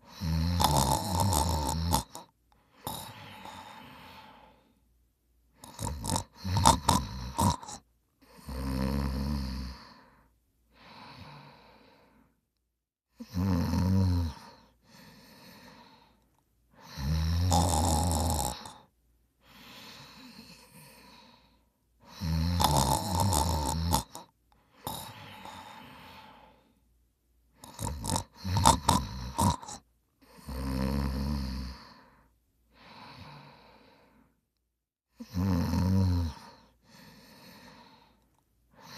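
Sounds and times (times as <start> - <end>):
person snoring: 0.0 - 4.8, 5.5 - 12.3, 13.1 - 26.8, 27.6 - 34.4, 35.1 - 38.9
soft breathing: 2.1 - 6.5, 9.6 - 12.6, 14.3 - 17.1, 18.6 - 22.2, 24.1 - 28.5, 31.5 - 34.5, 36.3 - 38.9.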